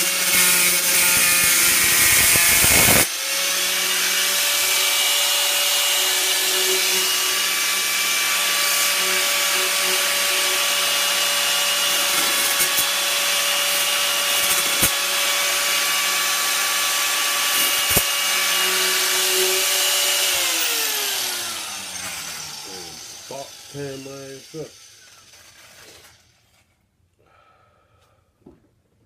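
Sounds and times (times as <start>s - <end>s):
angle grinder cutting steel: 0.0s - 26.7s.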